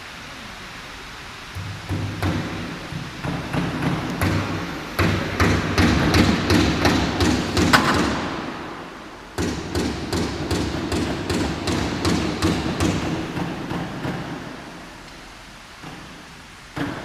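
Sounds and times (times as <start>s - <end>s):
router knocks and thuds: 1.6s - 8.4s.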